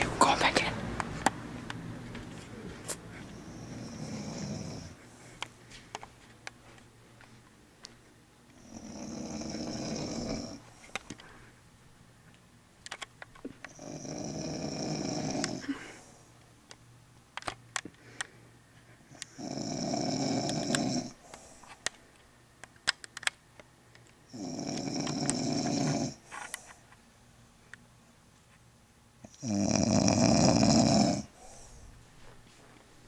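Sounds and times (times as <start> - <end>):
woman snoring loudly: 3.4 - 5.0, 8.6 - 10.6, 13.7 - 16.0, 19.3 - 21.2, 24.3 - 26.2, 29.3 - 31.6.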